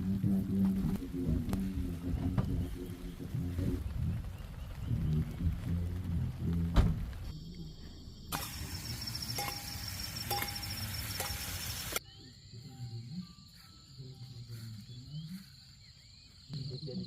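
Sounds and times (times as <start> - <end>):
insect trill: 7.3 - 17.0
loud even hiss: 8.3 - 12.0.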